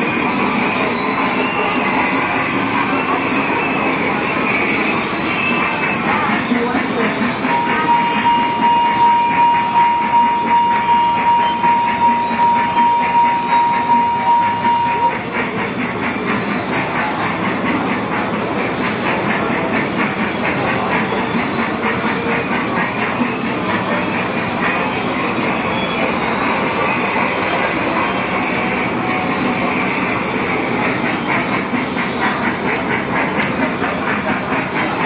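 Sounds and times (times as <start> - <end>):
ride train clattering on track: 0.0 - 35.0
steady high tone: 7.4 - 15.3.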